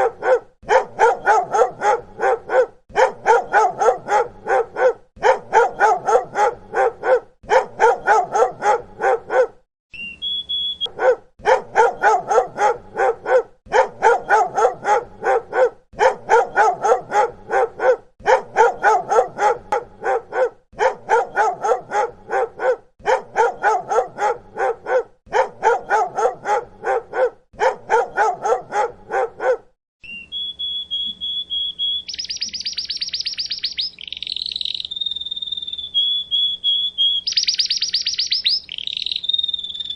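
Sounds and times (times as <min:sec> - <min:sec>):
dog barking rapidly: 0:00.0 - 0:09.6, 0:10.8 - 0:29.8
high chirping tone with buzzing trill: 0:09.9 - 0:11.0, 0:30.0 - 0:39.9.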